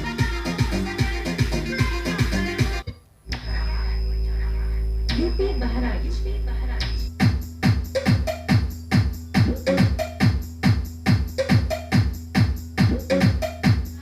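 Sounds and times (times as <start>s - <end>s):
electronic dance music: 0.0s - 2.8s, 7.2s - 14.0s
kick drum: 6.9s - 13.9s.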